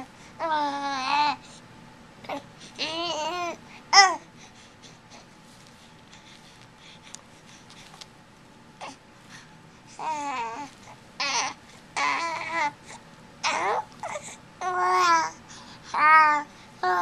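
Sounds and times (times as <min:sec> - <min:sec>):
baby babbling: 0:00.4 - 0:01.4, 0:02.3 - 0:04.2, 0:10.0 - 0:12.8, 0:13.4 - 0:17.0.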